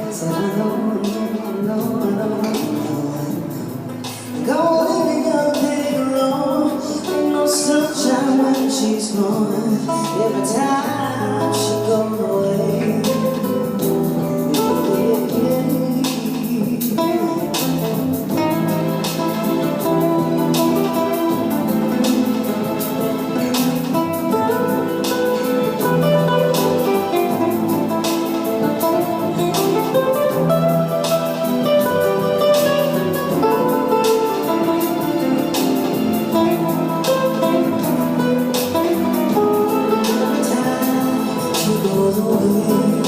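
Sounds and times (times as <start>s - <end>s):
instrumental guitar music: 0.0s - 43.0s
sharp beat hits: 12.8s - 43.0s.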